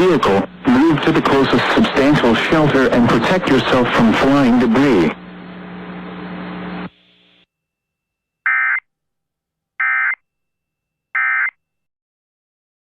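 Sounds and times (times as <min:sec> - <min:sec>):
broadcast hum and hiss: 0:00.0 - 0:07.4.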